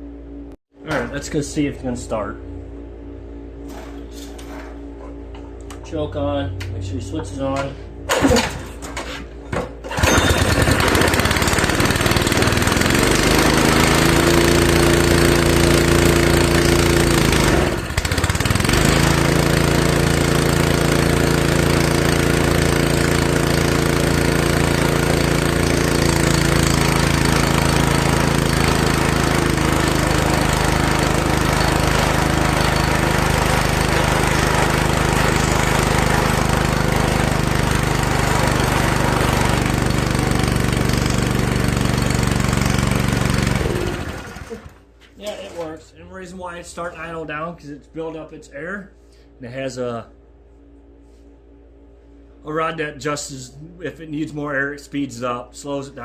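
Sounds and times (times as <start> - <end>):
air compressor engine running: 9.7 - 44.9
engine pull-started: 9.8 - 44.9.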